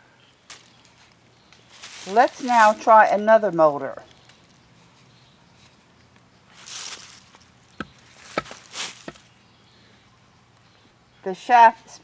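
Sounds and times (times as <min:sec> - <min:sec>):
rustling: 0:00.5 - 0:09.3.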